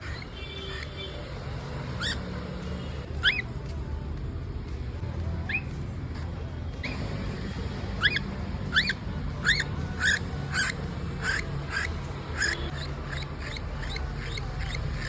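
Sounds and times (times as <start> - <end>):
baby cockatiel begging chirps: 0.0 - 2.5, 3.2 - 3.5, 8.0 - 15.0.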